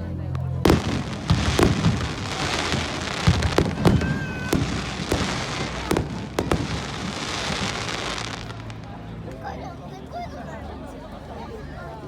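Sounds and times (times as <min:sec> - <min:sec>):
fireworks bangs: 0:00.6 - 0:08.9.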